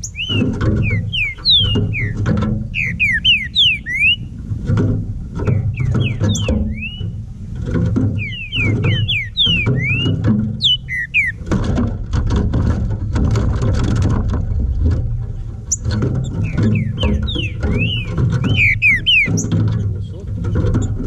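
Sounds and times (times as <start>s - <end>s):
bird singing slurred whistles: 0.0s - 4.3s, 5.4s - 7.2s, 8.2s - 11.4s, 15.7s - 19.6s
dense low background sound: 0.0s - 21.0s.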